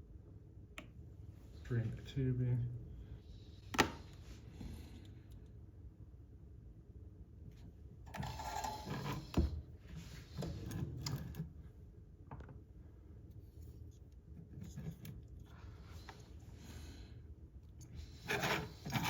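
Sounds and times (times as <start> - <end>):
tools rustling and scraping on workbench: 8.1 - 11.4, 18.0 - 19.0.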